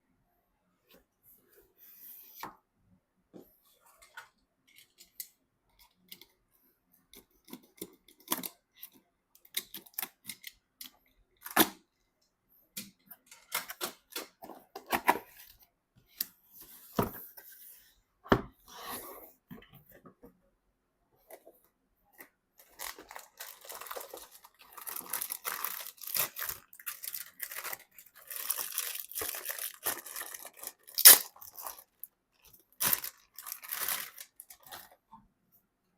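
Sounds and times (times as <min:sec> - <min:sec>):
cardboard and plastic rustling: 0:22.2 - 0:32.1, 0:32.8 - 0:35.1.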